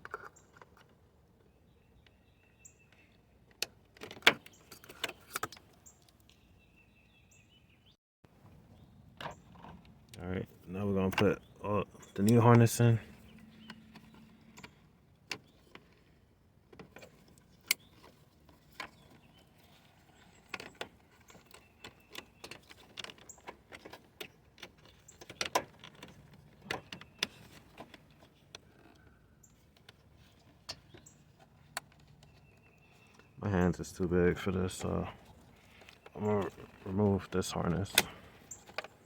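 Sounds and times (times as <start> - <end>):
wiring harness clicks and rattles: 16.7 - 32.5, 34.7 - 39.0.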